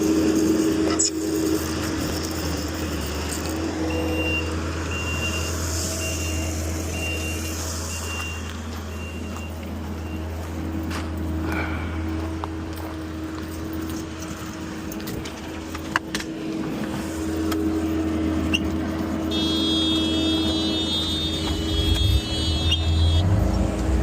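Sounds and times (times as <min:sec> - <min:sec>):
diesel engine running: 0:00.0 - 0:24.0
travel alarm beeping: 0:03.8 - 0:10.4, 0:18.5 - 0:23.4.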